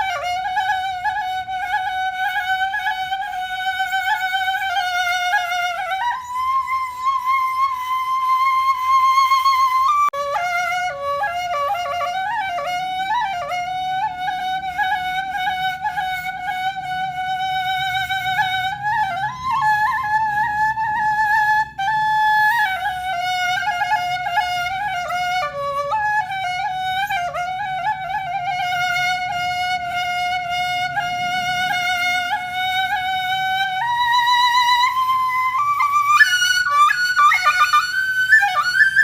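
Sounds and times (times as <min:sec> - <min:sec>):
flute melody: 0:00.0 - 0:39.0.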